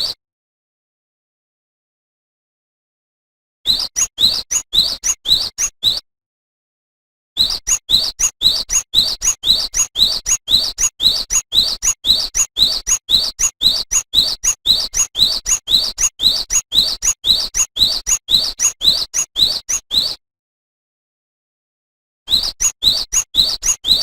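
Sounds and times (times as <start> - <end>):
bird singing whistled notes: 3.7 - 6.1, 7.4 - 20.2, 22.3 - 24.0.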